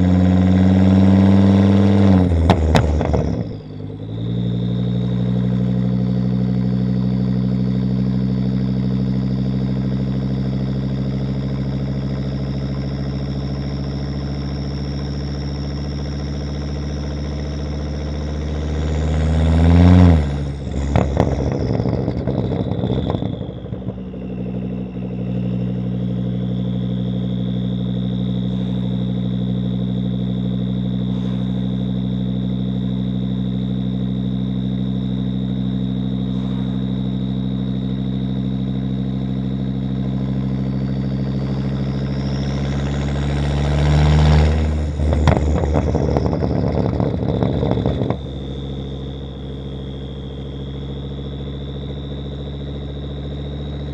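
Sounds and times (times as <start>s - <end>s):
car engine idling and revving: 0.0s - 53.9s
exhaust crackling pops: 0.5s - 4.0s, 18.3s - 37.0s, 40.0s - 53.9s.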